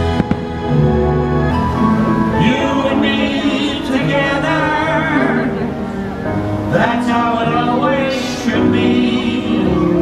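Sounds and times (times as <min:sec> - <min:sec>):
music with singing: 0:00.0 - 0:10.0.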